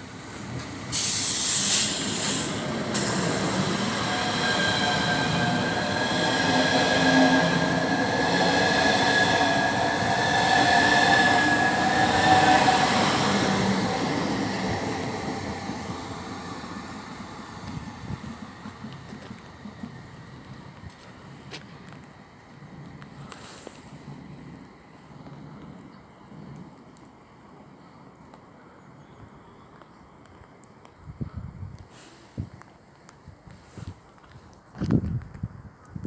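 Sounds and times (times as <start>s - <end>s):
electric train rumble and whine: 0.0s - 36.0s
short hiss: 0.9s - 3.2s.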